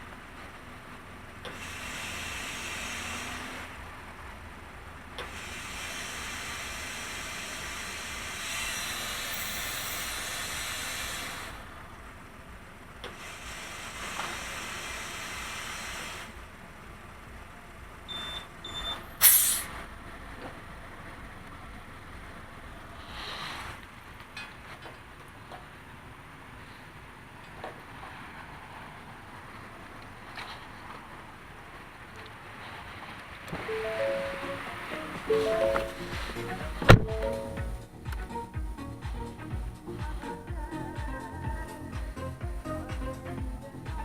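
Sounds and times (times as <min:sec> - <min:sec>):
road and tyre noise: 0:00.0 - 0:38.2
loud hiss: 0:00.7 - 0:17.3, 0:19.0 - 0:20.0, 0:22.2 - 0:23.8, 0:32.8 - 0:37.8
sharp burst of noise: 0:05.2 - 0:11.7, 0:33.5 - 0:37.7.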